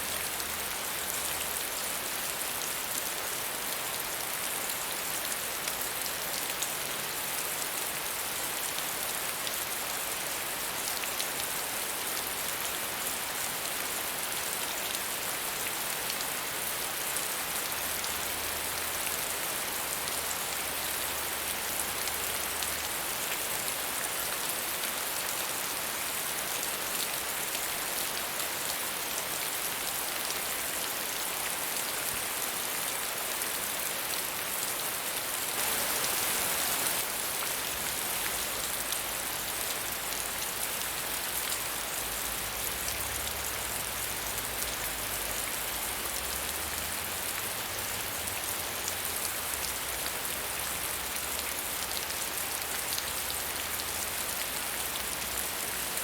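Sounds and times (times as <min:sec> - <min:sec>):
rain hissing: 0:35.5 - 0:40.1.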